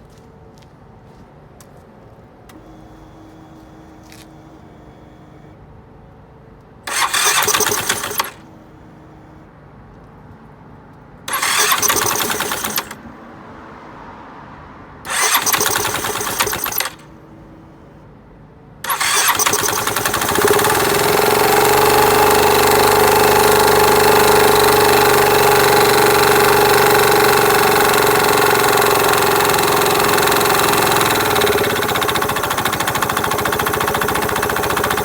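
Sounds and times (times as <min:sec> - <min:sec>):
scooter engine cranking: 0:06.9 - 0:08.5, 0:11.3 - 0:13.2, 0:15.1 - 0:17.1, 0:18.8 - 0:35.0.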